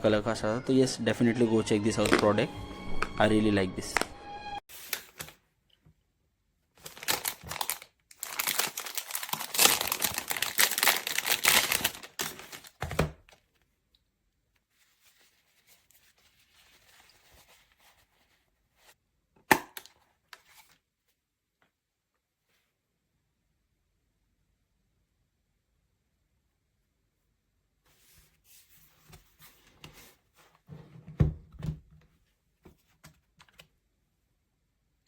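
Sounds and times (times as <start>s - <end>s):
crinkling handling noise: 4.7s - 5.8s, 6.7s - 13.8s.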